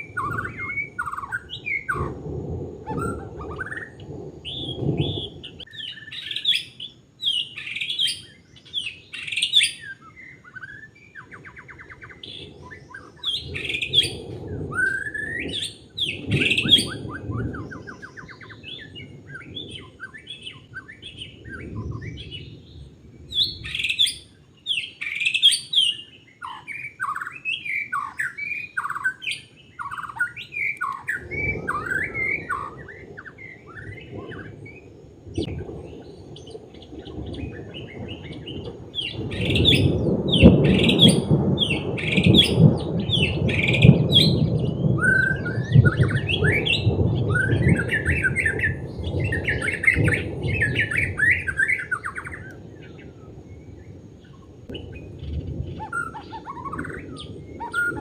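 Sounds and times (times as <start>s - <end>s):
bird singing whistled song: 0.0s - 2.2s, 2.9s - 58.0s
low rumbling noise: 0.0s - 5.7s, 31.1s - 58.0s.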